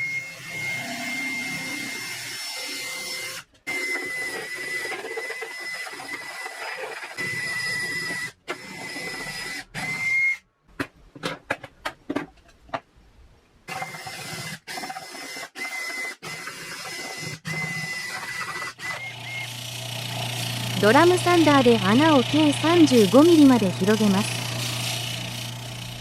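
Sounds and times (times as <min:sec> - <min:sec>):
trimmer router whining: 0:00.0 - 0:06.4, 0:17.0 - 0:26.0.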